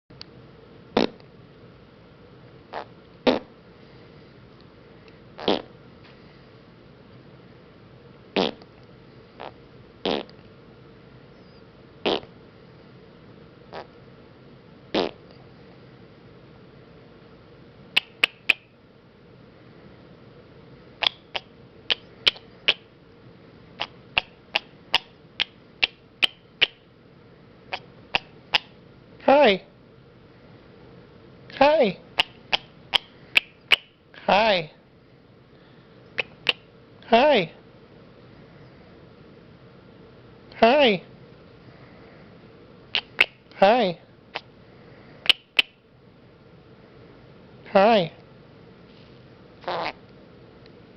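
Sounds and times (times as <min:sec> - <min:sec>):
parrot making raspberry noises: 0:01.0 - 0:01.2, 0:02.7 - 0:03.6, 0:05.4 - 0:05.7, 0:08.4 - 0:08.7, 0:09.4 - 0:10.4, 0:12.0 - 0:12.3, 0:13.7 - 0:14.0, 0:14.9 - 0:15.2, 0:18.0 - 0:18.7, 0:21.0 - 0:22.8, 0:23.8 - 0:26.8, 0:27.7 - 0:28.7, 0:31.6 - 0:34.7, 0:36.2 - 0:36.7, 0:42.9 - 0:44.5, 0:49.6 - 0:50.0.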